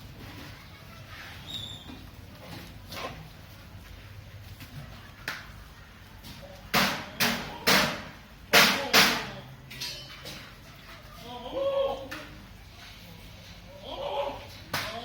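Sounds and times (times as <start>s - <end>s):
sharp bangs: 6.7s - 9.4s.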